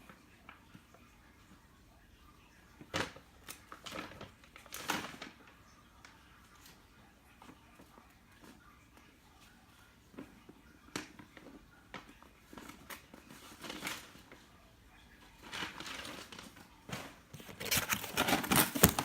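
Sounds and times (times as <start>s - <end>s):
cardboard crinkles and rustles: 2.8s - 5.5s, 11.0s - 14.4s, 15.4s - 19.0s.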